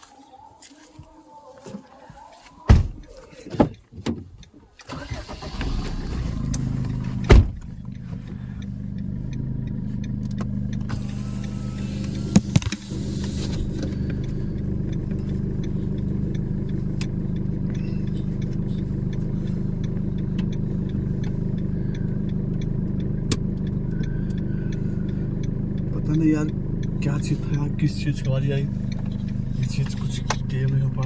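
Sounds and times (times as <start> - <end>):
car engine idling: 2.4 - 31.0
car doors thumping shut: 2.7 - 3.0, 7.2 - 7.7.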